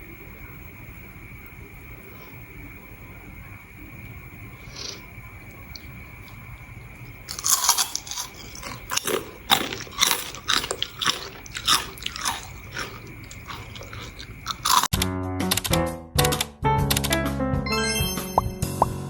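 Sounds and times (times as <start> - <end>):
crunching potato snack: 5.7 - 15.0.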